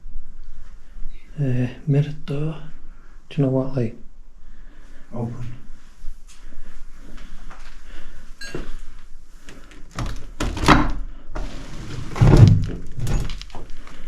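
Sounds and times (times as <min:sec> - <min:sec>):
door thunking: 0:09.9 - 0:11.1, 0:12.2 - 0:13.6
door scraping: 0:09.9 - 0:13.7.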